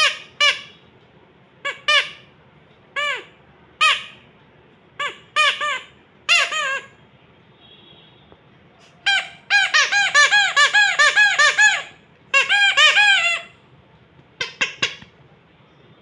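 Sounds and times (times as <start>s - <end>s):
squeaky toy squeaks: 0.0s - 0.8s, 1.6s - 2.3s, 2.9s - 4.3s, 5.0s - 7.0s, 8.8s - 13.6s, 14.4s - 15.1s.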